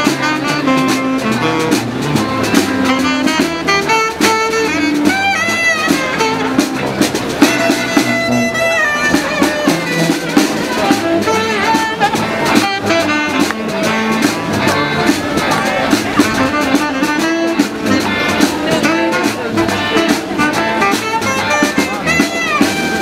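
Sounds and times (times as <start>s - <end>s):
horn melody: 0.0s - 23.0s
steady drum beat: 0.0s - 23.0s.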